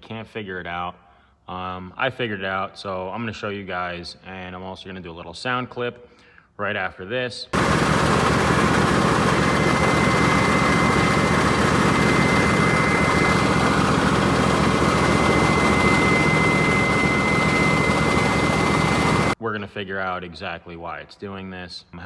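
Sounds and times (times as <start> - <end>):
lawn tractor engine running: 7.6 - 19.4.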